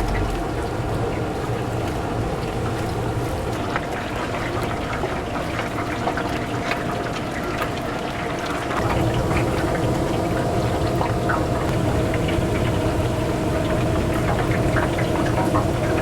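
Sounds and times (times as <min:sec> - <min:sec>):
steady low hum: 0:00.0 - 0:02.2
chicken deep-frying in hot oil: 0:00.0 - 0:16.0.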